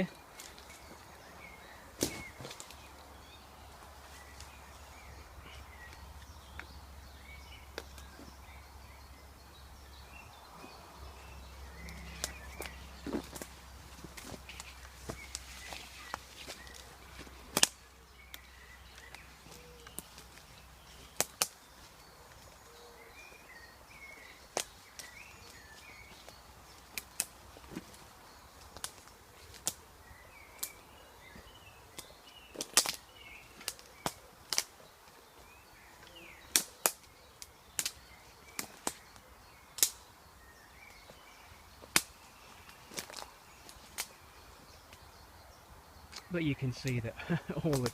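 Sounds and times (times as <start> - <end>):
footsteps through undergrowth: 0.0 - 8.6, 9.8 - 45.1
faint birdsong: 0.0 - 47.9
twigs snapping underfoot: 0.3 - 1.2, 2.0 - 2.9, 5.4 - 6.8, 7.7 - 8.3, 11.8 - 22.6, 24.0 - 40.1, 41.8 - 45.1, 47.6 - 47.9.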